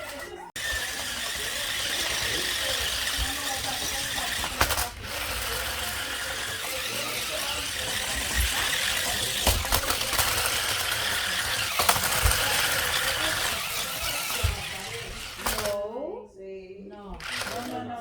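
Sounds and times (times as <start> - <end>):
toy car knocking: 0.0 - 15.8, 17.2 - 17.9
toy car motor whirring: 0.0 - 15.9, 17.1 - 18.0.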